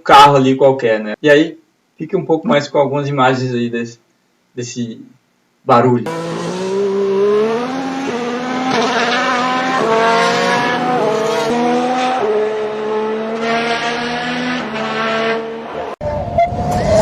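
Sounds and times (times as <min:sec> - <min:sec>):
race car engine accelerating: 0:06.1 - 0:17.0.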